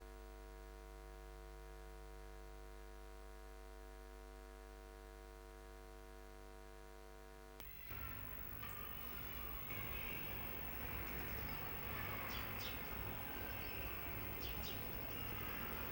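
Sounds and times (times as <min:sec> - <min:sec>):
electrical mains hum: 0:00.1 - 0:15.9.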